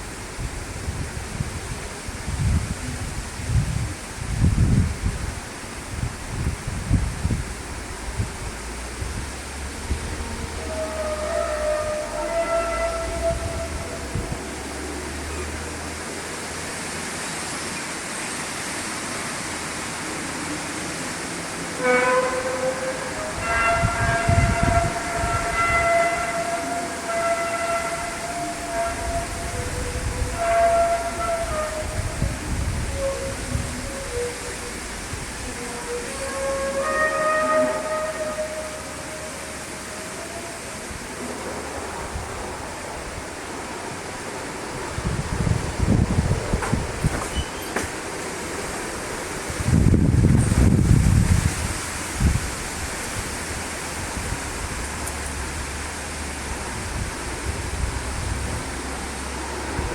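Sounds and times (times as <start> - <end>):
steady rushing noise: 0.0 - 10.7, 38.4 - 59.9
horn-like blare: 9.5 - 15.6, 21.8 - 41.6.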